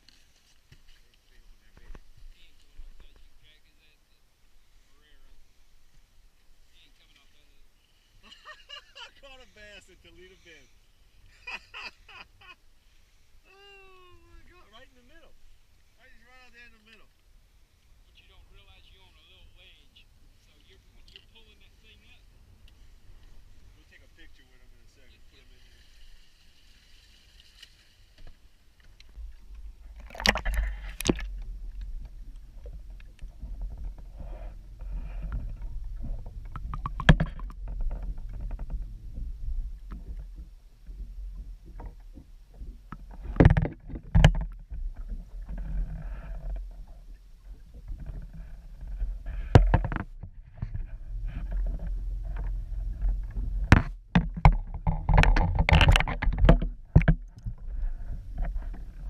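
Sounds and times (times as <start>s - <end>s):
boat motor and water rumble: 28.9s - 59.0s.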